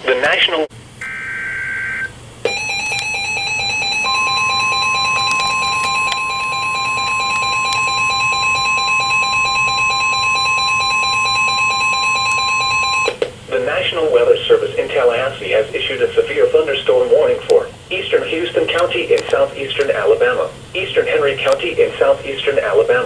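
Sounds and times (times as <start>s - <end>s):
rapid electronic alert beeping: 1.0s - 13.2s
steady warning alarm tone: 1.0s - 23.0s.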